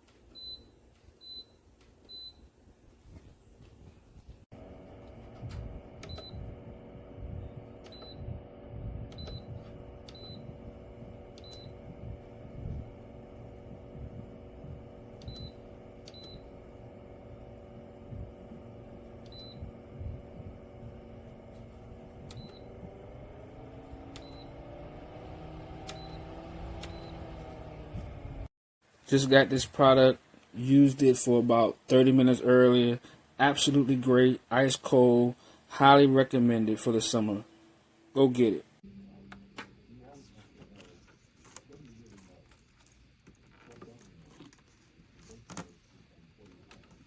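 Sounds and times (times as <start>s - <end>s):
steady fan hum: 3.0s - 28.5s.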